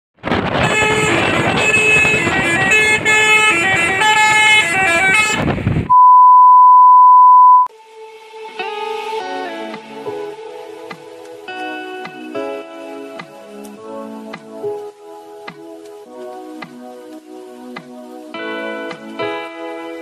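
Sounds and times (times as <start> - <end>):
bus horn playing a melody: 0.6 - 5.6
traffic noise: 0.6 - 5.9
steady loud beep: 5.9 - 7.7
soft music: 7.7 - 20.0.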